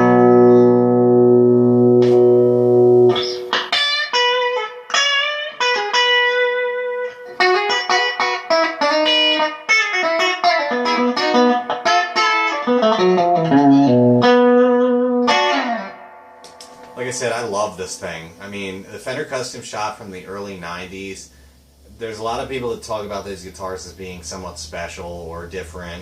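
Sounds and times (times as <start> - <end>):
electric guitar through amp: 0.0 - 19.4.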